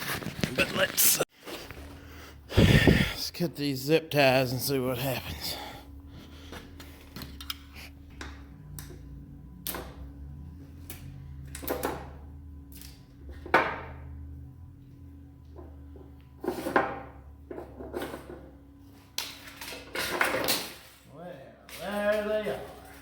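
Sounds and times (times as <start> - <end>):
low hum: 1.6 - 16.4.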